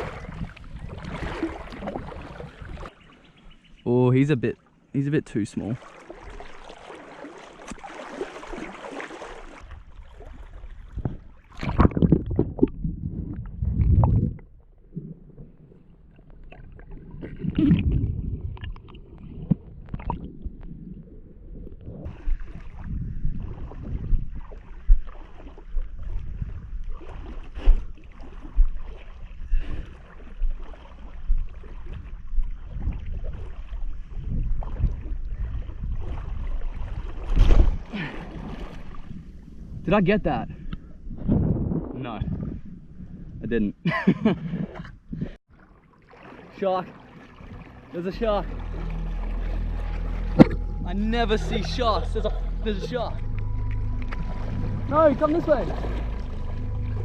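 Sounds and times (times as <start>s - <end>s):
water sloshing and splashing: 0.0s - 3.7s, 4.6s - 43.2s, 44.4s - 57.0s.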